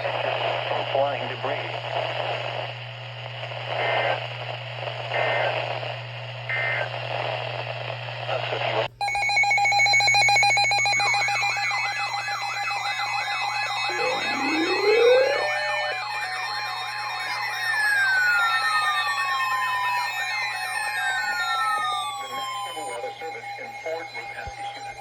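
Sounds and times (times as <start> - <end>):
hissy weather radio: 0.0 - 9.0, 10.9 - 16.2, 21.8 - 25.0
pulsing electronic alarm tones: 9.0 - 25.0
siren-like sweeping tone: 9.2 - 25.0.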